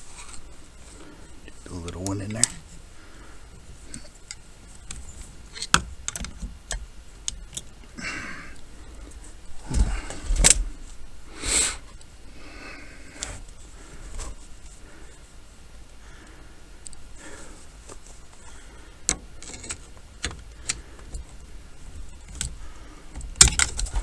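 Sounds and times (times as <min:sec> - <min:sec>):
plastic and metal parts clicking: 0:19.1 - 0:21.4, 0:22.1 - 0:24.0.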